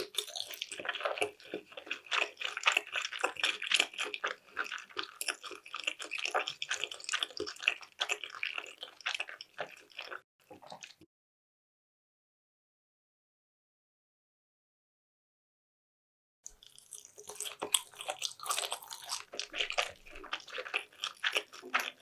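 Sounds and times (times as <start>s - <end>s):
wet chewing mouth sounds: 0.0s - 11.0s, 16.5s - 22.0s.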